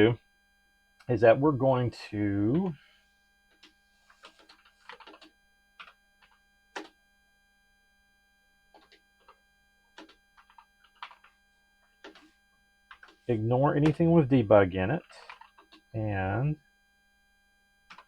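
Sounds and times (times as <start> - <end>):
keyboard keys clicking: 3.6 - 6.9, 8.8 - 9.4, 10.0 - 11.3, 15.1 - 15.8.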